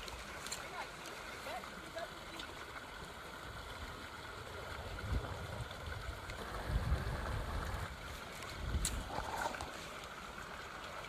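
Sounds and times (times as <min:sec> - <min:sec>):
creek water rushing: 0:00.0 - 0:11.0
low rumble on microphone: 0:04.6 - 0:09.7.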